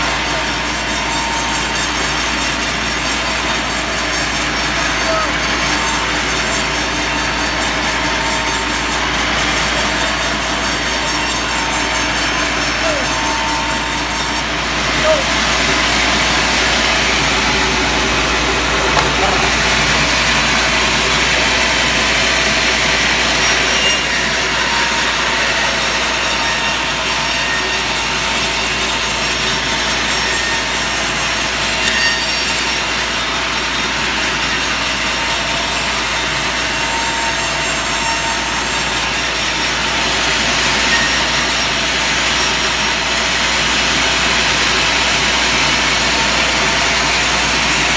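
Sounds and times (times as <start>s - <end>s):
saw blade ripping through wood: 0.0s - 14.4s, 23.4s - 40.0s
machine humming: 0.0s - 14.5s.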